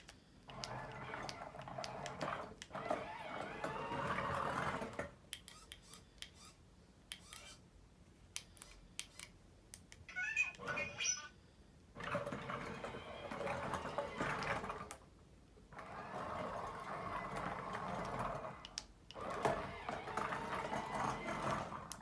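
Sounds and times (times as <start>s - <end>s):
small electric motors whirring: 0.5s - 7.6s, 15.8s - 22.0s.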